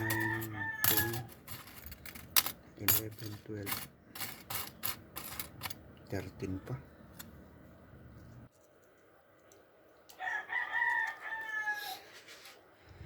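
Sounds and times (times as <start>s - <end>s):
rooster crowing: 0.0s - 1.3s, 10.1s - 12.2s
low steady hum: 0.0s - 10.2s.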